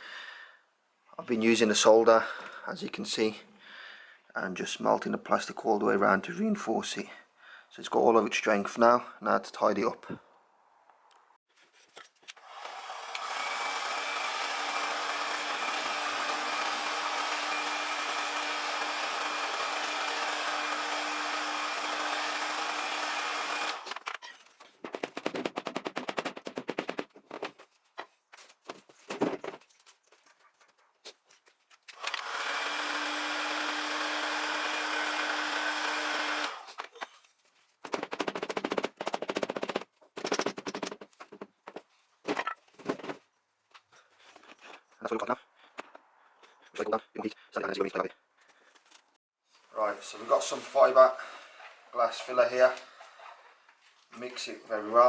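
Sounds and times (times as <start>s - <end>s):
handheld power sander running: 12.4s - 24.0s, 32.0s - 36.8s
rapid clattering on plastic: 24.1s - 27.6s.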